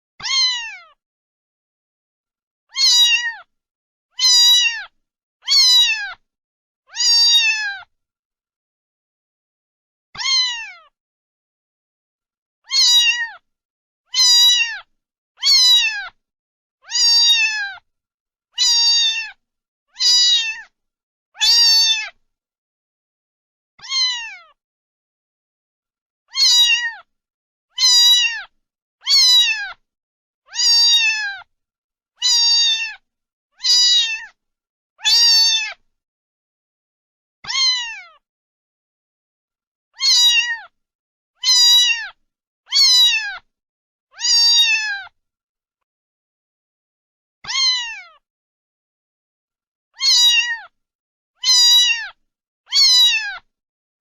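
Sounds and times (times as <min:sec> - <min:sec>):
cat meowing: 0:00.2 - 0:01.0, 0:02.7 - 0:03.5, 0:04.2 - 0:06.2, 0:06.9 - 0:07.9, 0:10.2 - 0:11.0, 0:12.6 - 0:13.4, 0:14.1 - 0:16.2, 0:16.8 - 0:17.8, 0:18.6 - 0:19.4, 0:20.0 - 0:20.7, 0:21.4 - 0:22.2, 0:23.8 - 0:24.6, 0:26.3 - 0:27.1, 0:27.7 - 0:29.8, 0:30.5 - 0:31.5, 0:32.2 - 0:33.0, 0:33.6 - 0:34.4, 0:35.0 - 0:35.8, 0:37.4 - 0:38.2, 0:40.0 - 0:40.8, 0:41.4 - 0:43.5, 0:44.1 - 0:45.2, 0:47.4 - 0:48.2, 0:50.0 - 0:50.8, 0:51.4 - 0:53.5.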